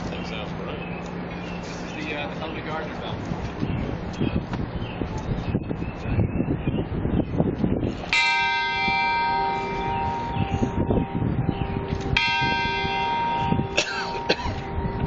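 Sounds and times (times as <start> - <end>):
tower bell ringing: 8.1 - 15.0.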